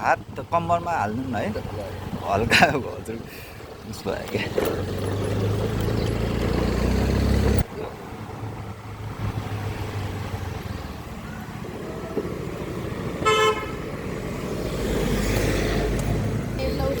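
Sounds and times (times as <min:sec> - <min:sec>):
low vehicle rumble: 0:00.0 - 0:17.0
road noise: 0:00.0 - 0:17.0
short vehicle horn toot: 0:13.2 - 0:13.8.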